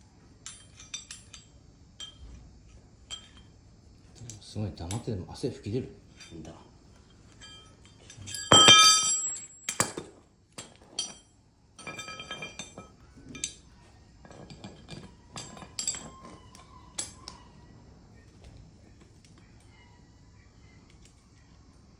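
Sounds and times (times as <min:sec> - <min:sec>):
metal tools clinking: 0:00.4 - 0:02.4, 0:03.1 - 0:03.6, 0:06.0 - 0:17.4
loud ringing metal clank: 0:08.3 - 0:09.6.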